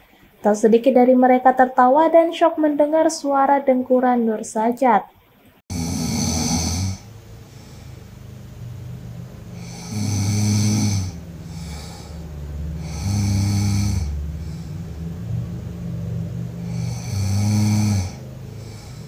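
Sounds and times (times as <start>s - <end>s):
person snoring: 5.7s - 8.2s, 9.5s - 15.4s, 16.5s - 19.0s
quiet breathing: 6.3s - 8.8s, 9.5s - 15.6s, 16.4s - 19.0s.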